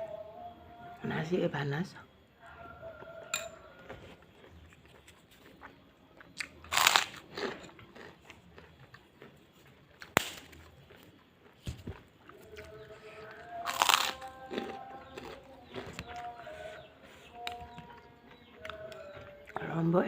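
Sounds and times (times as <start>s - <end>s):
quiet chewing: 2.4s - 20.0s
crunching bites into crisp food: 3.8s - 16.7s.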